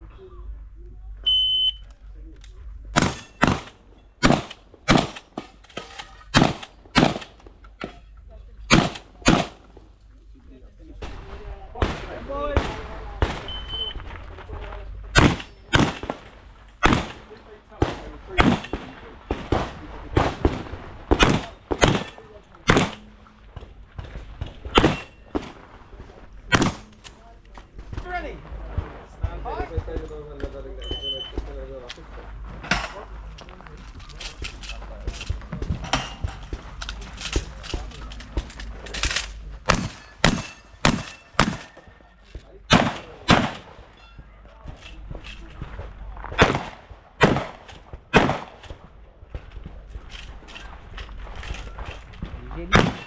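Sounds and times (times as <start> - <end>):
shotgun shots: 3.0 - 8.0, 8.7 - 9.9, 11.0 - 14.2, 15.1 - 29.2, 35.9 - 42.0, 42.6 - 44.0, 46.2 - 53.0.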